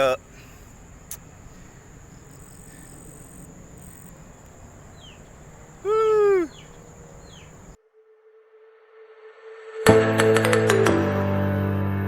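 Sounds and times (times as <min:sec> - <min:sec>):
crickets trilling: 0:00.0 - 0:07.8
drawn-out falling call: 0:00.0 - 0:07.8
outdoor hiss: 0:00.0 - 0:07.8.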